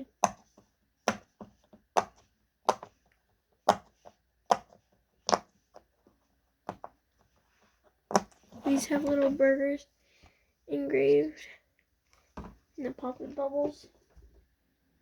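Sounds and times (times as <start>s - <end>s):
pop-it toy bubbles popping: 2.0s - 2.9s, 3.7s - 5.5s.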